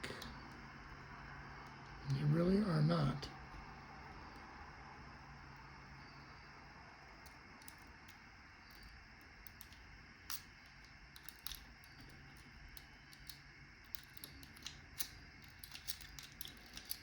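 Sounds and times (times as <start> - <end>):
lock pick clicking in padlock: 7.6 - 17.0.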